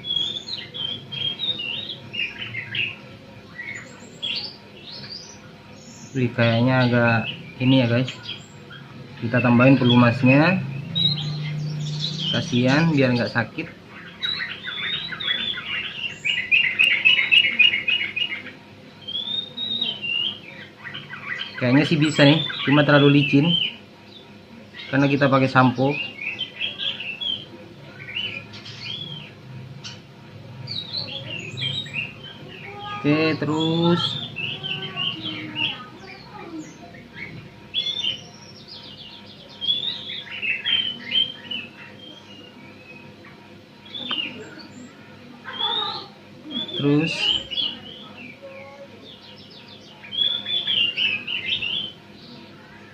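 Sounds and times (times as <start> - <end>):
sparrow chirping: 0.0 - 52.9.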